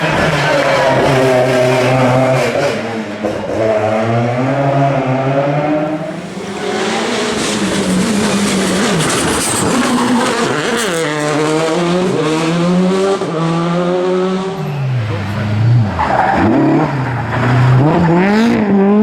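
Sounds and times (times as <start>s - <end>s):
rally car engine revving: 5.8s - 19.0s.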